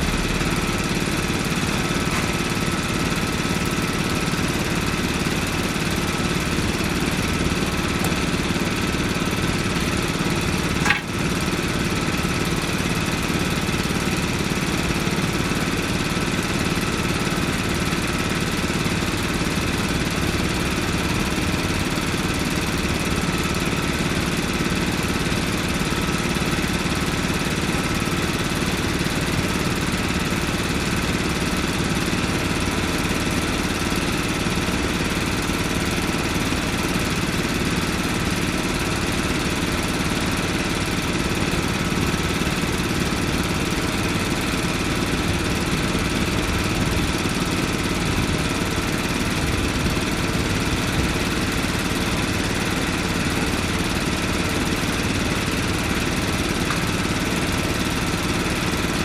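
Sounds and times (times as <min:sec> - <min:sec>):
engine idling: 0:00.0 - 0:59.0
brief click: 0:10.8 - 0:11.2.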